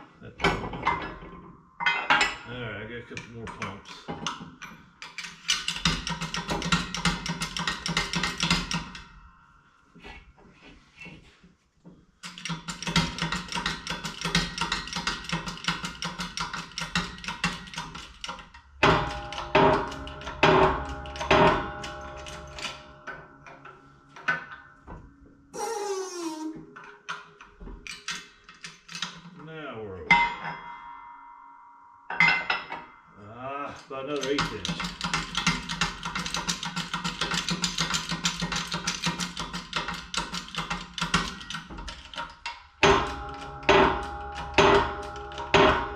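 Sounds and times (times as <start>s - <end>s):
loud metal knocks: 18.8s - 23.2s, 42.8s - 45.9s
press squeaking and creaking: 25.6s - 26.8s
press rattling and clicking: 34.2s - 43.5s.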